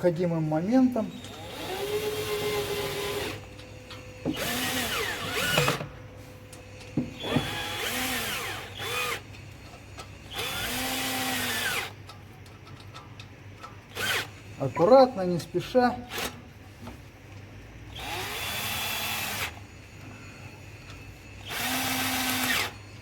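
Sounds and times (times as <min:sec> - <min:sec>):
cordless drill running: 0:01.2 - 0:03.5, 0:04.1 - 0:05.8, 0:07.2 - 0:09.2, 0:10.3 - 0:12.0, 0:13.9 - 0:14.5, 0:17.9 - 0:19.6, 0:21.4 - 0:22.8.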